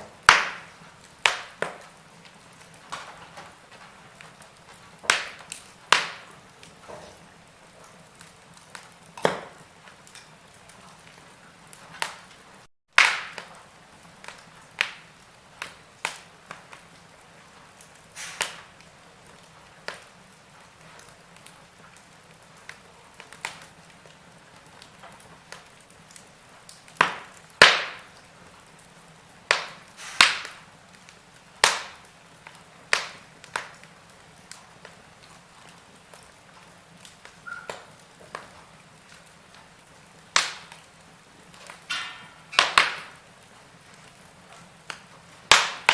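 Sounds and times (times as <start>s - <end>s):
faint steady hiss: 0.0s - 45.9s
wood fire crackling: 0.0s - 45.9s.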